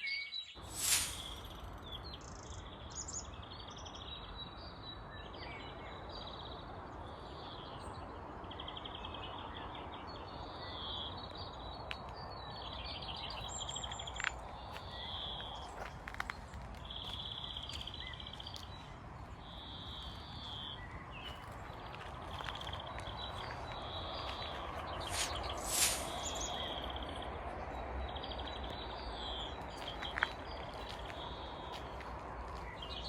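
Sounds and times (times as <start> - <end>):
steady background hiss: 25.0 - 26.9.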